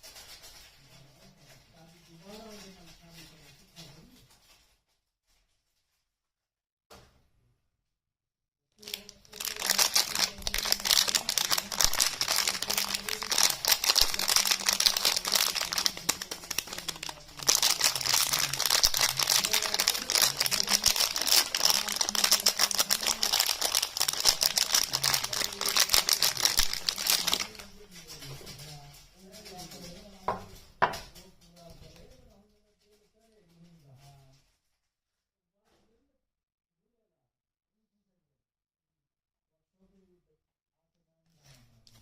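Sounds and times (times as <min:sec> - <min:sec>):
packaging crinkling: 0:08.8 - 0:31.0.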